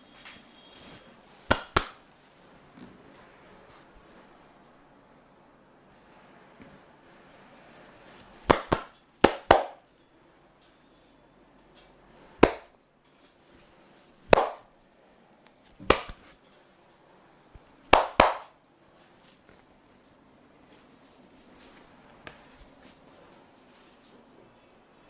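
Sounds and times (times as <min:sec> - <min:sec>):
hands slapping body in massage: 0:01.4 - 0:02.1, 0:08.4 - 0:09.8, 0:12.4 - 0:12.7, 0:14.3 - 0:14.7, 0:15.8 - 0:16.4, 0:17.9 - 0:18.6.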